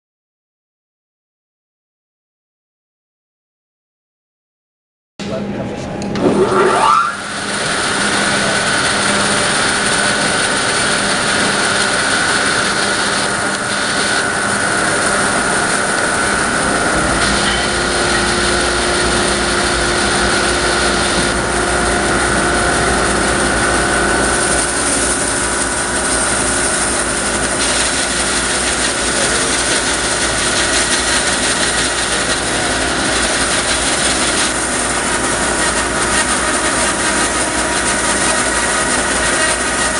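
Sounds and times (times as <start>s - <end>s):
bandsaw whining: 6.1s - 39.9s
saw blade ripping a board: 24.4s - 39.9s.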